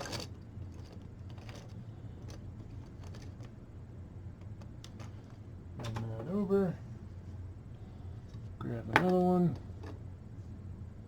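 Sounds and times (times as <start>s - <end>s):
plastic parts clicking and rattling: 0.0s - 3.6s
steady low hum: 0.0s - 11.0s.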